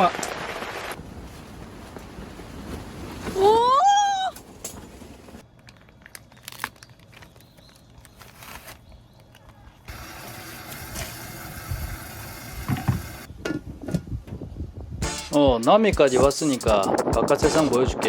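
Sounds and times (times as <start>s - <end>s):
hiss of rain and wind: 0.0s - 5.4s.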